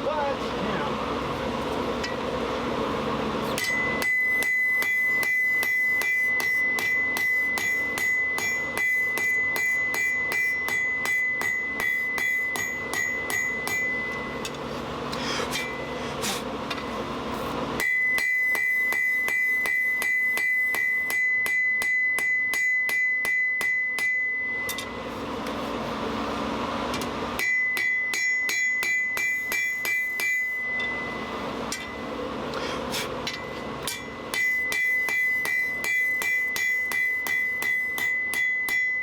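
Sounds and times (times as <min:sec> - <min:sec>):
hammer ringing on anvil: 0:03.6 - 0:14.6, 0:15.4 - 0:16.0, 0:17.8 - 0:25.2, 0:27.4 - 0:32.2, 0:33.2 - 0:39.0.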